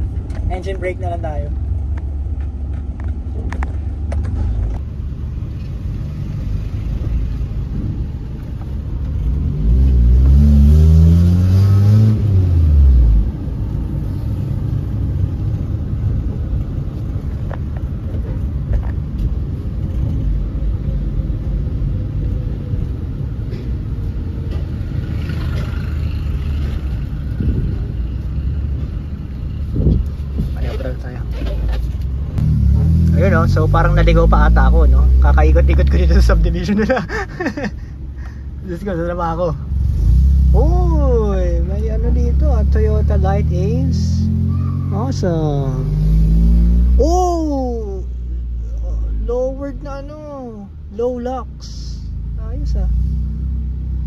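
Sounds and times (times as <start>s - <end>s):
road noise: 0.0s - 54.0s
car engine revving: 5.9s - 16.9s, 30.6s - 37.6s, 38.9s - 48.8s.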